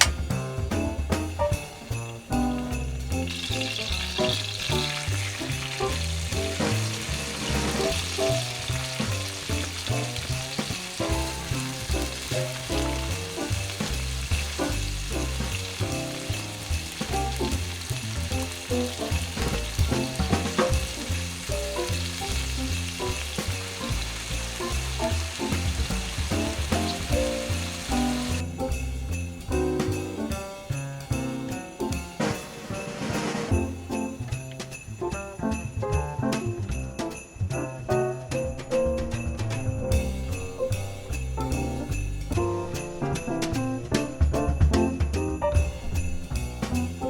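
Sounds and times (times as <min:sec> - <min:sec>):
background music with bass line: 0:00.0 - 0:32.3
steak sizzling in a pan: 0:03.2 - 0:28.5.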